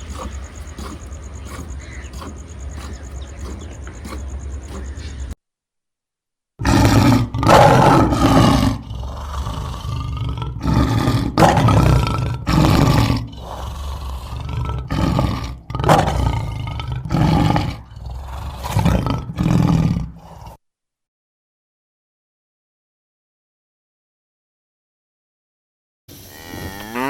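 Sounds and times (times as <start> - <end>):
big cat roaring and grunting: 0.0 - 5.3, 6.6 - 20.6, 26.4 - 27.0.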